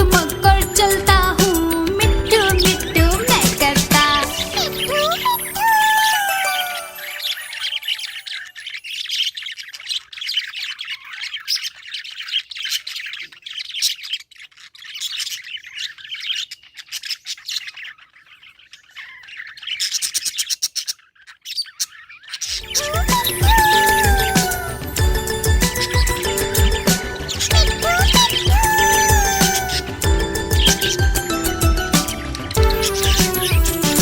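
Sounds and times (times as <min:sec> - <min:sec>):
budgerigar chirping and chattering: 0:07.2 - 0:33.9.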